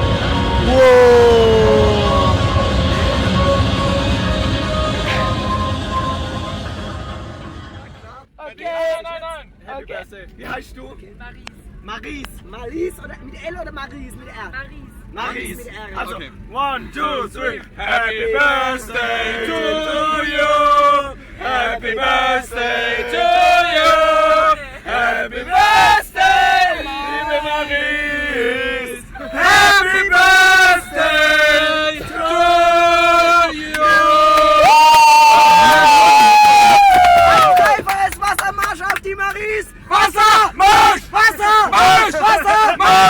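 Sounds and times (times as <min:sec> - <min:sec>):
group of voices chanting a song: 0:00.0 - 0:05.7, 0:17.9 - 0:34.8, 0:39.9 - 0:43.0.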